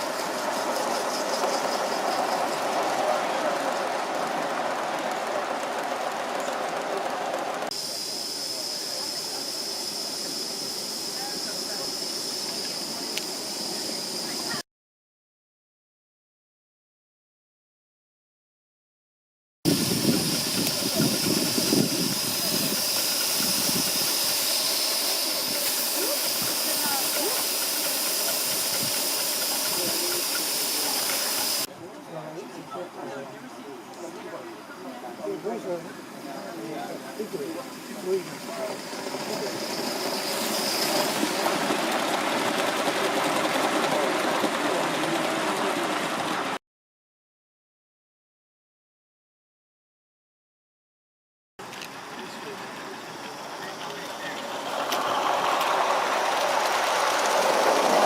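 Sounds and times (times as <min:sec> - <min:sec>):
model train running on track: 0:00.0 - 0:14.6, 0:19.7 - 0:46.6, 0:51.6 - 0:58.0
steam hissing: 0:00.0 - 0:14.6, 0:19.7 - 0:31.7, 0:34.7 - 0:46.6, 0:51.8 - 0:58.0.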